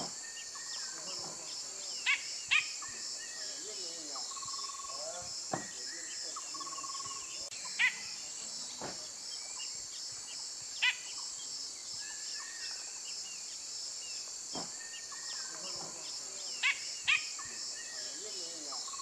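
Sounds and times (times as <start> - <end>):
bird giving harsh calls: 0.0 - 9.0, 10.8 - 11.3, 14.8 - 18.2
pulsing insect chorus: 0.0 - 19.0.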